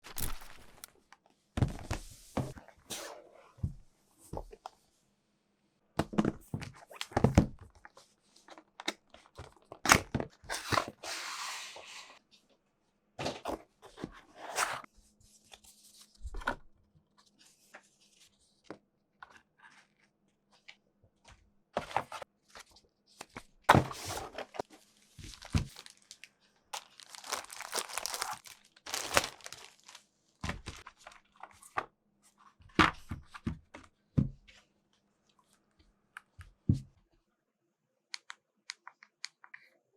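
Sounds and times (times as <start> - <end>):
wrapping tearing and crinkling: 0.0 - 0.9, 24.9 - 30.8.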